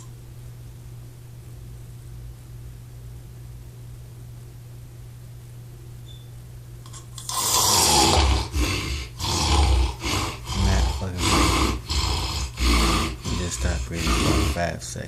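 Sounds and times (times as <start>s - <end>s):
low steady hum: 0.0s - 15.0s
loud snoring: 7.3s - 14.8s.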